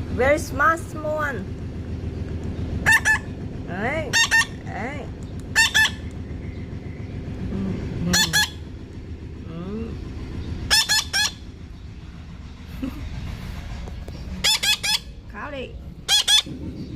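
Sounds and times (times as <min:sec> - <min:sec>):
parrot squawking: 0:02.8 - 0:03.4, 0:04.0 - 0:04.7, 0:05.5 - 0:06.1, 0:08.1 - 0:08.8, 0:10.7 - 0:11.5, 0:14.4 - 0:15.2, 0:16.0 - 0:16.9.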